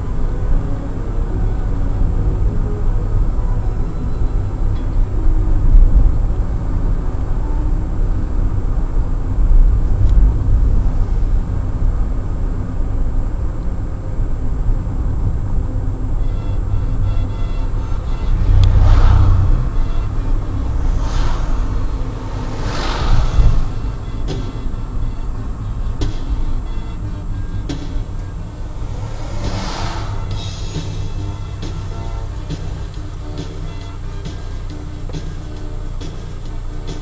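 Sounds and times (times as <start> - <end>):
car engine and road noise: 0.0 - 37.0
brief rushing swell: 17.6 - 33.2.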